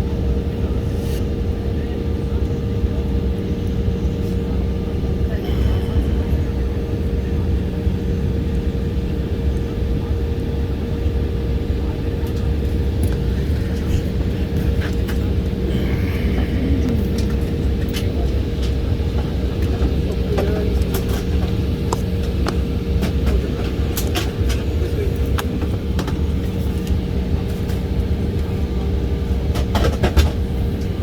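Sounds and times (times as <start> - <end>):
constant hum: 0.0 - 31.0
jet engines idling: 0.0 - 31.0.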